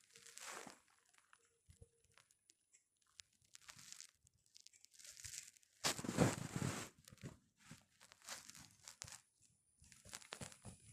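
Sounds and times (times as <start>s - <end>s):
rustling and scraping: 0.0s - 1.3s, 3.5s - 9.3s.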